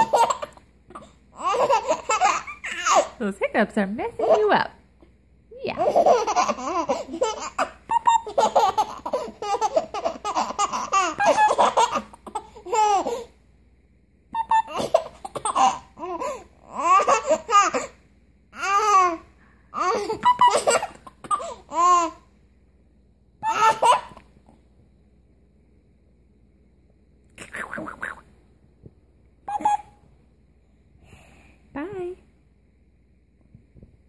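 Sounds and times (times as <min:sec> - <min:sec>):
baby laughing: 0:00.0 - 0:03.2, 0:04.2 - 0:04.5, 0:05.8 - 0:13.3, 0:14.4 - 0:18.0, 0:18.6 - 0:22.2, 0:23.4 - 0:24.2, 0:29.5 - 0:30.0.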